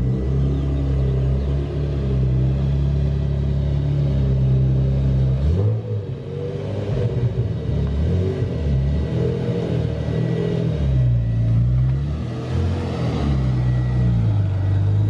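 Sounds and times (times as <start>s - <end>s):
car engine and exhaust: 0.0s - 15.0s.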